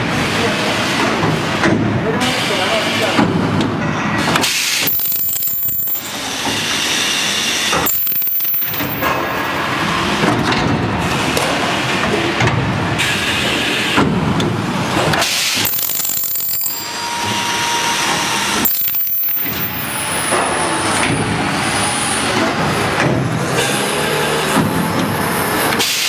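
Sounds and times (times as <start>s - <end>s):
welding machine clattering: 7.8s - 9.5s, 15.5s - 17.0s, 18.6s - 20.0s
faint high whine: 7.9s - 9.2s, 18.7s - 20.0s.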